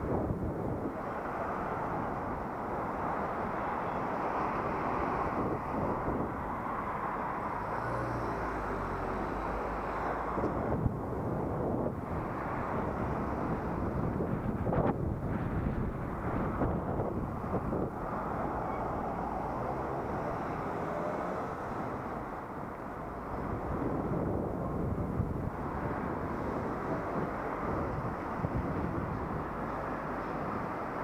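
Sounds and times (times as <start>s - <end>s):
traffic noise: 0.0s - 31.0s
wind rush: 0.0s - 31.0s.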